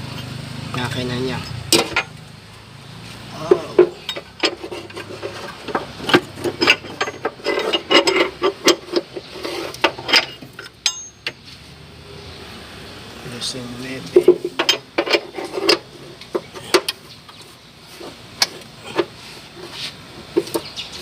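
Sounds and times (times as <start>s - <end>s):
metal clinks: 3.4s - 5.1s, 5.7s - 9.0s, 9.9s - 11.4s.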